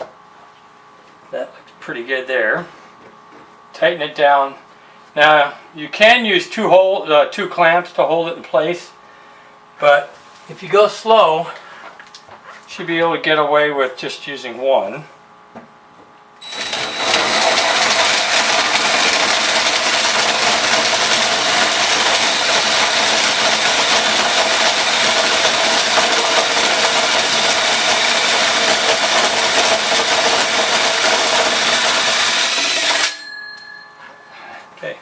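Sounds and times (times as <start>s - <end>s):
power drill cutting through wood: 16.4s - 33.2s.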